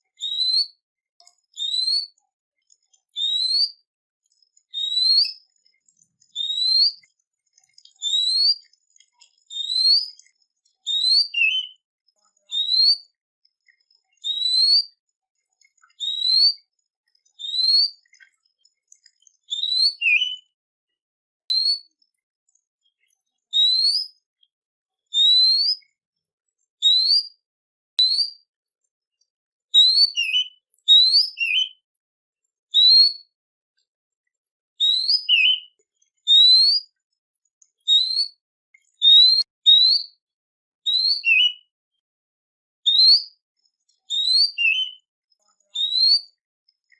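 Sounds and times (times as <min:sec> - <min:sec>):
songbird whistling: 0:00.2 - 0:00.8, 0:01.5 - 0:02.2, 0:03.1 - 0:03.8, 0:04.7 - 0:05.4, 0:06.3 - 0:07.0, 0:08.0 - 0:08.7, 0:09.5 - 0:10.2, 0:10.8 - 0:11.8, 0:12.5 - 0:13.1, 0:14.2 - 0:15.0, 0:15.9 - 0:16.6, 0:17.4 - 0:18.0, 0:19.5 - 0:20.5, 0:21.5 - 0:21.9, 0:23.5 - 0:24.2, 0:25.1 - 0:25.8, 0:26.8 - 0:27.4, 0:28.0 - 0:28.4, 0:29.8 - 0:31.8, 0:32.8 - 0:33.3, 0:34.8 - 0:36.8, 0:37.9 - 0:38.4, 0:39.0 - 0:40.2, 0:40.9 - 0:41.7, 0:42.9 - 0:43.3, 0:44.1 - 0:45.1, 0:45.8 - 0:46.4.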